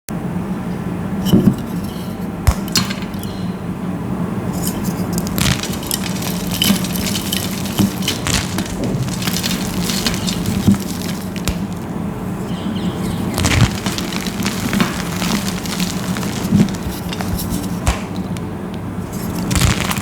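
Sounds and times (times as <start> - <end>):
crumbly material crackling: 4.3 - 20.0.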